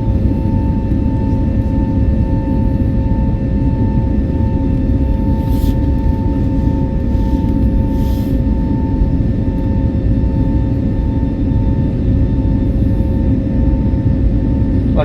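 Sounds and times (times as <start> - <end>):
aircraft cabin engine rumble: 0.0 - 15.0
steady whining tones: 0.0 - 15.0.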